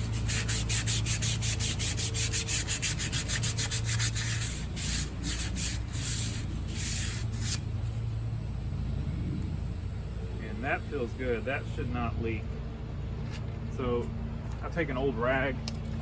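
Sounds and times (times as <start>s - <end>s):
sandpaper rubbing on metal rim: 0.0s - 8.0s.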